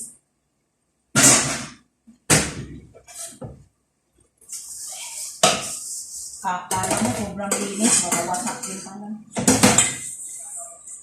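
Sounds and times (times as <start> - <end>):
steady hiss: 4.4 - 6.7
objects knocking and clattering: 6.7 - 10.2.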